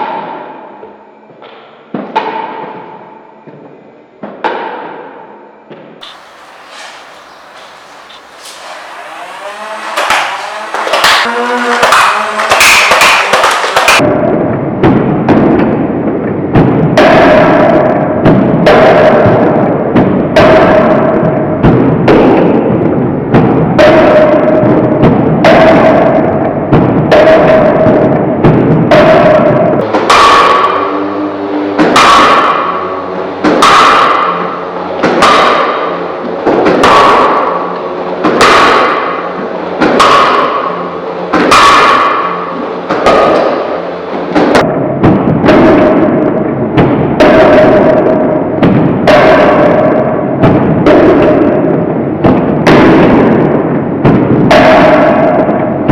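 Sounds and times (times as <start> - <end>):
heavy drum hits: 6.0 - 12.3
held synth note: 6.0 - 13.3.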